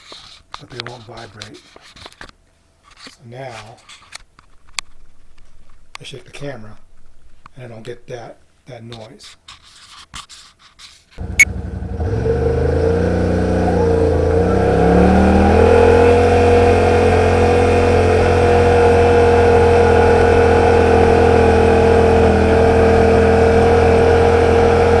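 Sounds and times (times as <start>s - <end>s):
engine running: 11.2s - 25.0s.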